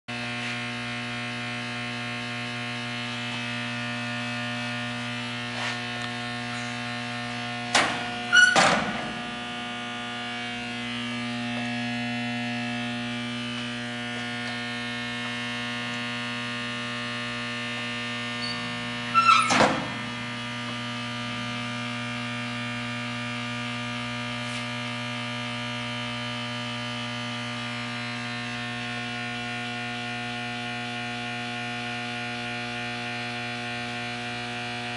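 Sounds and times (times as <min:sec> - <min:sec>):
furnace electrical hum: 0:00.2 - 0:34.9
loud clunks: 0:07.7 - 0:09.4, 0:19.3 - 0:20.2.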